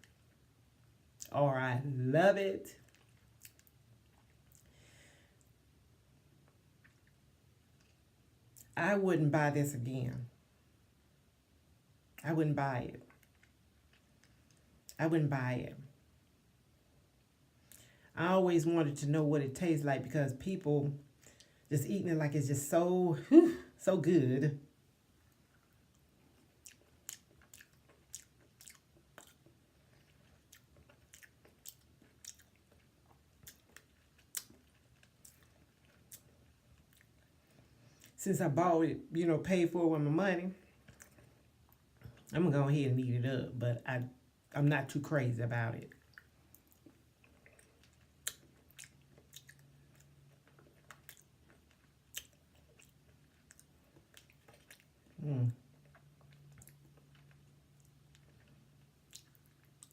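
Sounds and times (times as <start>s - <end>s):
wet mouth chewing clicks: 2.8s - 4.7s, 25.3s - 37.3s, 45.9s - 59.9s.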